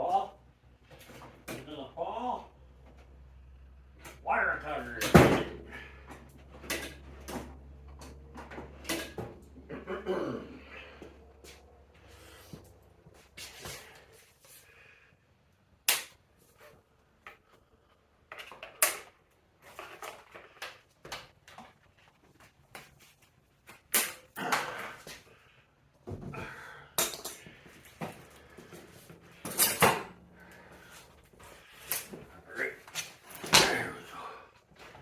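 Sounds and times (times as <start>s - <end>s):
wire cutters snipping zip ties: 29.4s - 30.1s, 31.8s - 32.2s.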